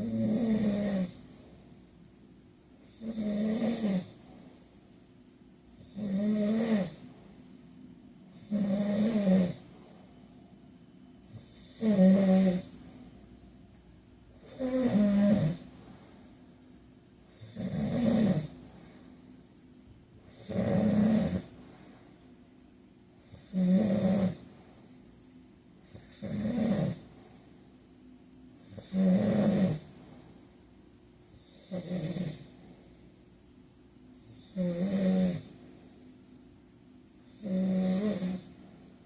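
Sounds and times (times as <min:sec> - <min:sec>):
man snoring: 0:00.0 - 0:01.2, 0:02.8 - 0:04.3, 0:05.8 - 0:07.1, 0:08.3 - 0:09.7, 0:11.3 - 0:12.8, 0:14.4 - 0:15.7, 0:17.3 - 0:18.9, 0:20.3 - 0:21.5, 0:23.2 - 0:24.5, 0:25.9 - 0:27.1, 0:28.6 - 0:29.9, 0:31.4 - 0:32.5, 0:34.2 - 0:35.5, 0:37.3 - 0:38.6.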